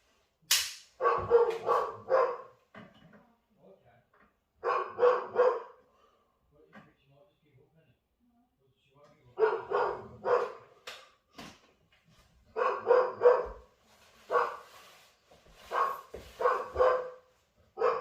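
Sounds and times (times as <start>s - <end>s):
dog barking: 1.0s - 2.6s, 4.6s - 5.9s, 9.4s - 10.7s, 12.5s - 14.8s, 15.7s - 18.0s.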